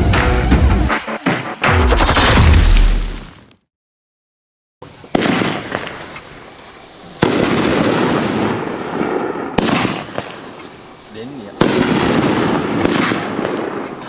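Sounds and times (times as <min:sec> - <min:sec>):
firework shots: 0:00.0 - 0:03.2, 0:04.8 - 0:06.2, 0:07.2 - 0:10.4, 0:11.6 - 0:13.9.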